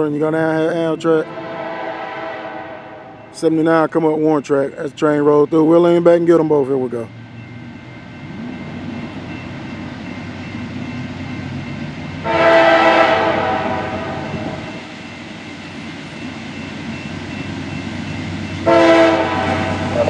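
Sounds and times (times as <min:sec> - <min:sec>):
train rumble: 0:00.0 - 0:20.0
locomotive air horn blast: 0:01.2 - 0:03.2, 0:12.2 - 0:14.7, 0:18.6 - 0:20.0.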